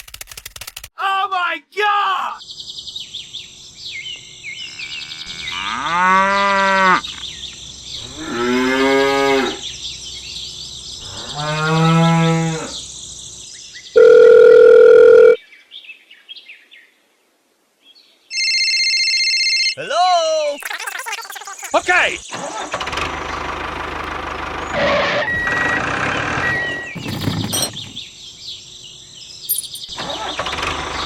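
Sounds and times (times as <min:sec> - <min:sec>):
cow mooing: 0:04.6 - 0:07.2, 0:08.0 - 0:09.6, 0:11.0 - 0:12.8
loud electronic beep: 0:25.2 - 0:27.8, 0:29.5 - 0:29.9.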